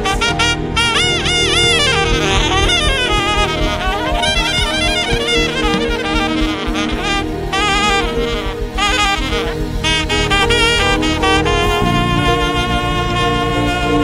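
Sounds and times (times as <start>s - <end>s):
saxophone melody: 0.0s - 14.0s
sustained chords: 0.0s - 14.0s
steady beat: 1.0s - 11.6s.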